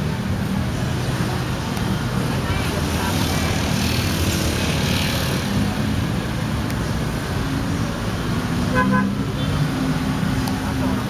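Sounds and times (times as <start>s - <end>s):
road traffic rumble: 0.0s - 11.0s.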